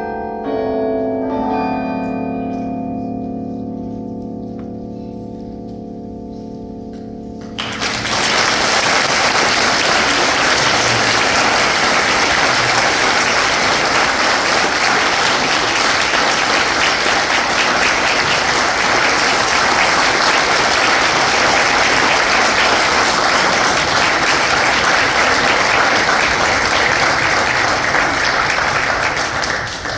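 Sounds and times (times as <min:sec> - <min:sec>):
congregation applauding: 0:07.4 - 0:29.9.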